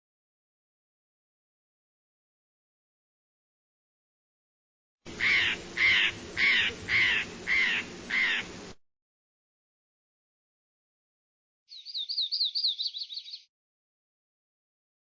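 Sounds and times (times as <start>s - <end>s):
bird's harsh calls: 5.1s - 8.7s, 11.7s - 13.5s.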